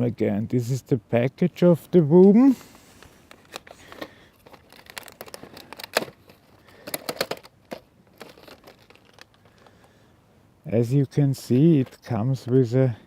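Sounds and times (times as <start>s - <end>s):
packaging crinkling: 2.8s - 9.9s.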